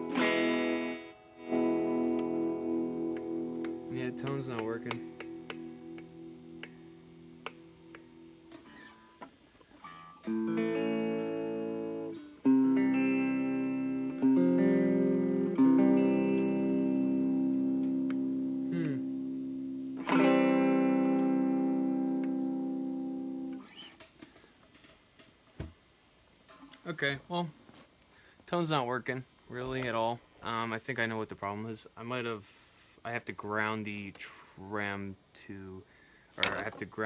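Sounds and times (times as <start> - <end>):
electric guitar chords ringing: 0.0 - 24.1.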